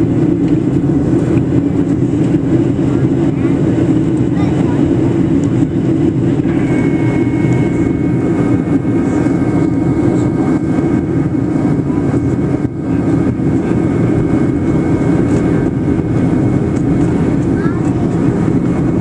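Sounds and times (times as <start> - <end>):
airplane cabin roar: 0.0 - 19.0
faint high whine: 6.4 - 10.4.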